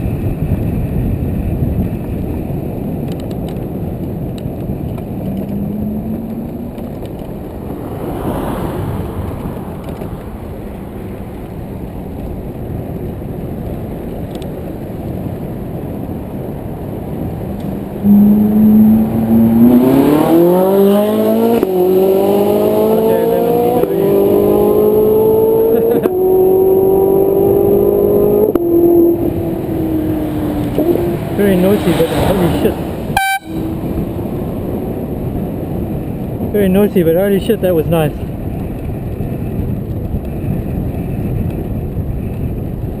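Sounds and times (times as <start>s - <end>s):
road noise: 0.0s - 43.0s
wind noise: 0.0s - 43.0s
car engine accelerating: 4.6s - 12.1s, 16.7s - 36.4s.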